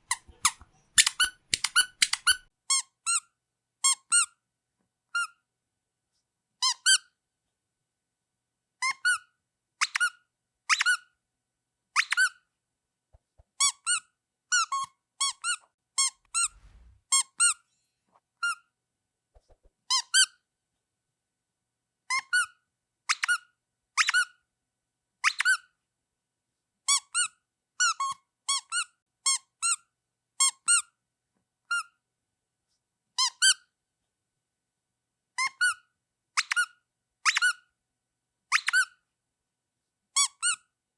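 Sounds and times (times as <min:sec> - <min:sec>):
rubber duck squeaking: 0:00.1 - 0:02.8, 0:13.6 - 0:17.6.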